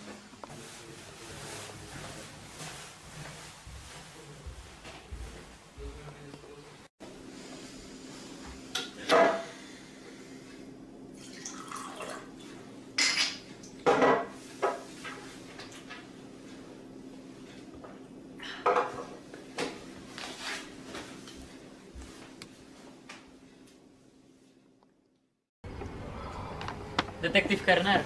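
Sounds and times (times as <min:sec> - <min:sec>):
steady low hum: 0:25.6 - 0:28.0.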